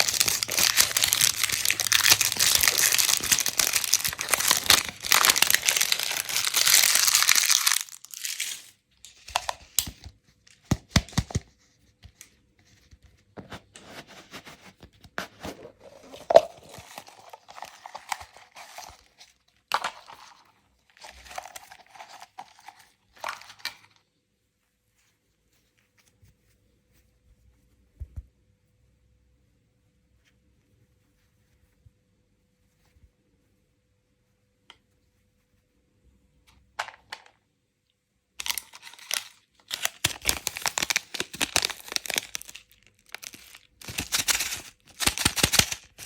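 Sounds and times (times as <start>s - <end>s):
packaging crinkling: 0.0s - 10.0s, 15.6s - 23.9s, 38.4s - 46.0s.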